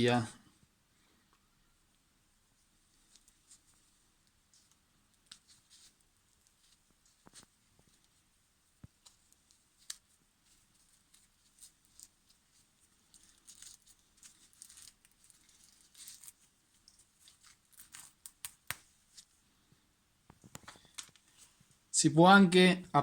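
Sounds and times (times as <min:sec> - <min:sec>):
wire insulation crackling and scraping: 0:02.6 - 0:19.4, 0:20.3 - 0:21.8.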